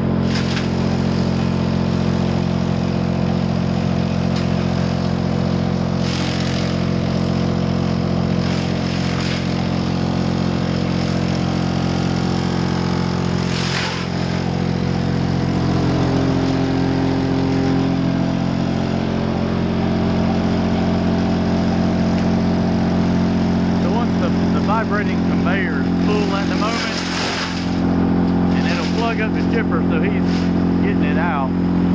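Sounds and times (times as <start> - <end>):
sawmill machinery humming: 0.0 - 31.9
hissing rattle bursts: 26.6 - 27.9.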